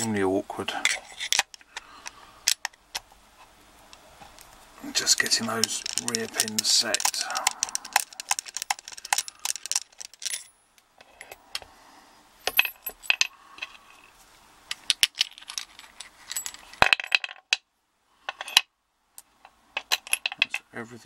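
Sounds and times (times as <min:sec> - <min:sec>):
small metallic clicks and clatter: 0:03.9 - 0:11.7.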